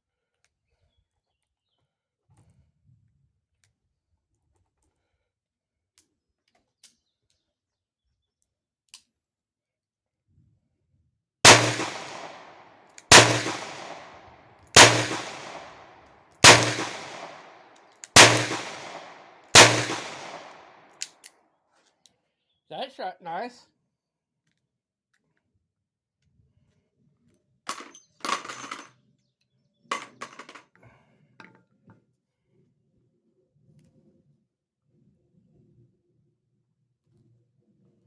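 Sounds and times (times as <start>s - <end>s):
revolver gunshots with echo: 11.5s - 17.6s, 18.2s - 20.9s.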